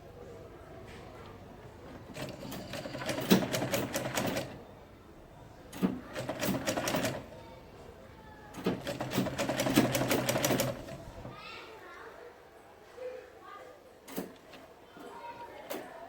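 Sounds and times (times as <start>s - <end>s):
sewing machine stitching: 1.9s - 4.6s, 5.7s - 7.4s, 8.5s - 11.3s.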